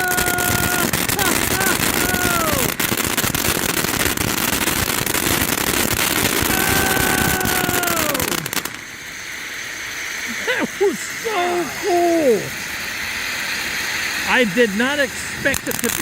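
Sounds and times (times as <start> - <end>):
firework whistling tones: 0.0 - 10.5
firework fountain crackling hiss: 0.0 - 16.0.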